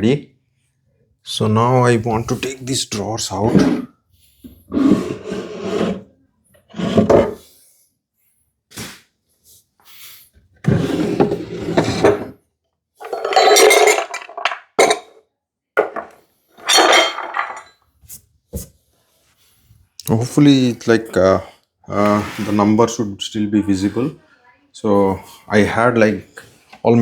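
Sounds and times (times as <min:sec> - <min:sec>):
wooden drawers sliding: 0:03.4 - 0:03.9, 0:04.7 - 0:06.1, 0:06.7 - 0:07.4, 0:10.6 - 0:12.4
knocks and clinks: 0:13.0 - 0:15.2, 0:15.8 - 0:17.8.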